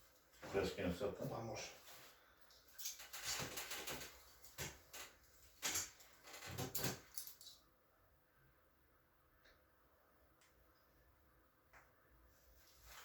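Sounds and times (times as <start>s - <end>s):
rustling and clattering: 1.9s - 7.4s.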